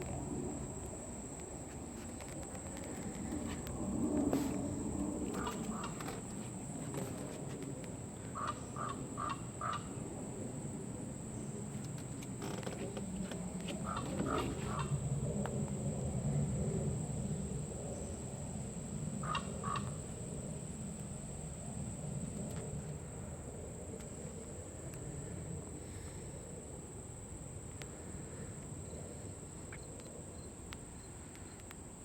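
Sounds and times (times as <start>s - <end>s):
crow calling: 5.3s - 6.3s, 8.3s - 10.0s, 13.8s - 15.0s, 19.2s - 20.0s.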